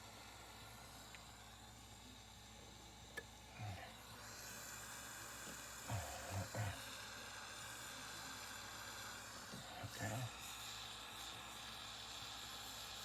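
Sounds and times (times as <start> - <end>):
soldering torch flame hissing: 0.0 - 13.0.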